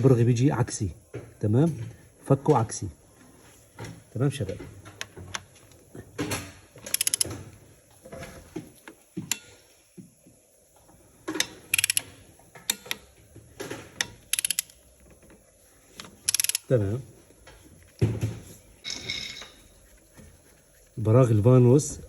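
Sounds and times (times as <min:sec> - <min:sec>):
ratchet wrench clicking: 0:06.9 - 0:07.3, 0:11.4 - 0:12.1, 0:14.0 - 0:14.8, 0:16.0 - 0:16.7
tools knocking: 0:18.0 - 0:19.7.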